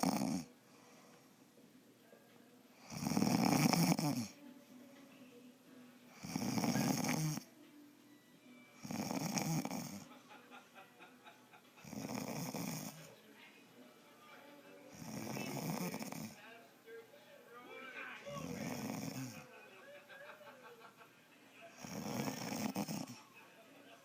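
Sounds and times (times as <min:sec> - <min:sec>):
woman snoring: 0:00.0 - 0:00.5, 0:02.8 - 0:04.4, 0:06.1 - 0:07.5, 0:08.8 - 0:10.1, 0:11.8 - 0:13.1, 0:14.9 - 0:16.4, 0:18.4 - 0:19.4, 0:21.8 - 0:23.2.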